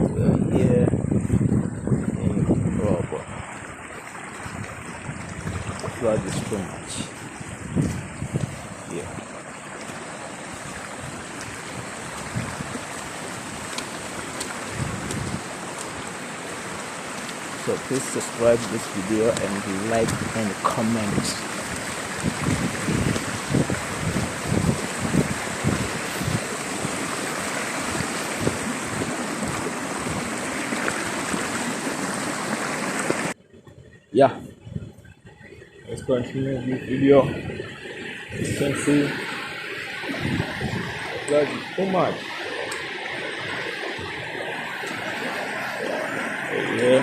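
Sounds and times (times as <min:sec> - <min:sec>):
floodwater rushing: 0:00.0 - 0:34.4, 0:35.3 - 0:47.0
wind buffeting microphone: 0:00.0 - 0:47.0
stormy weather rushing: 0:37.0 - 0:47.0.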